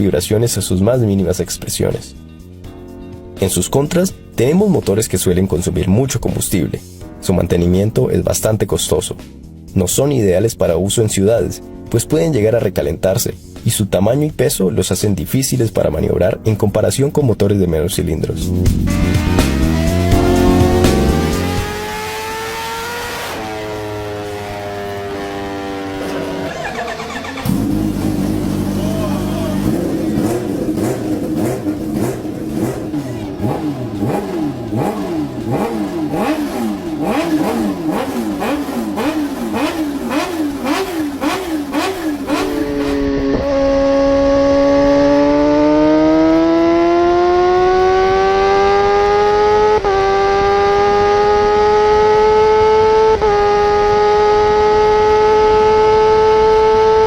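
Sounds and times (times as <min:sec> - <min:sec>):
motorcycle engine accelerating: 0:18.4 - 0:57.0
motorcycle engine revving: 0:18.4 - 0:57.0.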